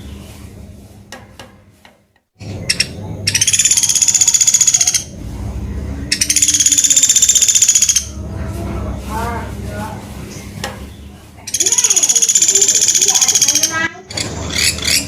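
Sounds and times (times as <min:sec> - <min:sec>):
woodpecker rattling trills: 0:02.7 - 0:05.1, 0:06.1 - 0:08.1, 0:11.5 - 0:15.0.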